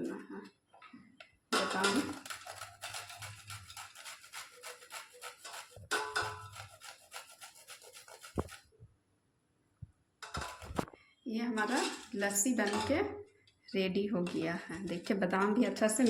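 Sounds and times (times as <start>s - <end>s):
nuts rasping on hand grater: 1.6s - 8.7s.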